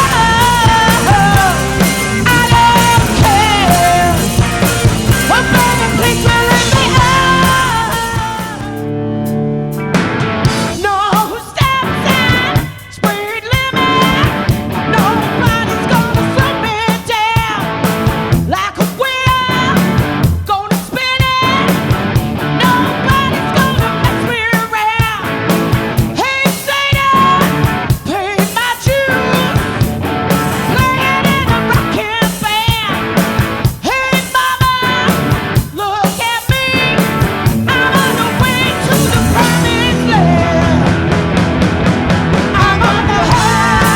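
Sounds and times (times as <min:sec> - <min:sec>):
lead guitar bending notes: 0:00.0 - 0:10.8
rock band playing live: 0:00.0 - 0:43.9.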